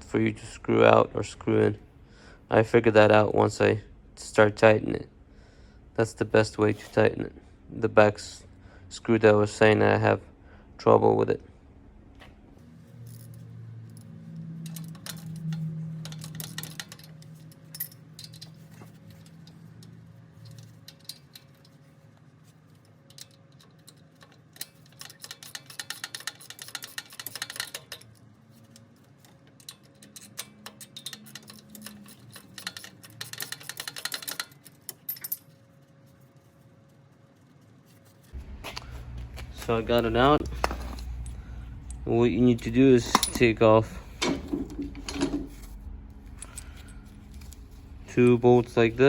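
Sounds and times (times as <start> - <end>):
tools clicking on metal: 13.9 - 21.8, 22.7 - 35.5, 39.6 - 43.6
socket ratchet clicking: 23.1 - 28.1, 29.6 - 34.8.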